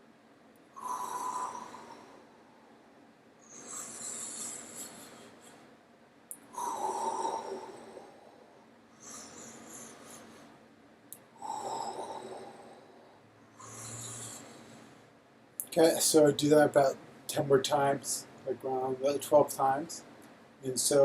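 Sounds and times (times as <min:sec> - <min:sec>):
man breathing deeply: 0:00.7 - 0:05.7, 0:06.3 - 0:10.6, 0:11.3 - 0:15.2.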